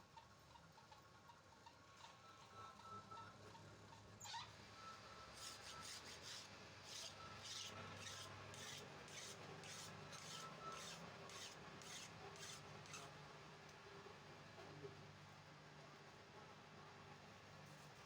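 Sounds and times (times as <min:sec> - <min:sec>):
hand tool scraping metal: 0:08.0 - 0:13.1.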